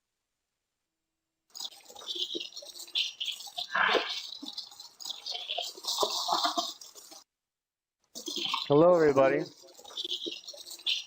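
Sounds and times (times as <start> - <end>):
filtered garbled voice: 1.6 - 7.2, 8.2 - 11.0.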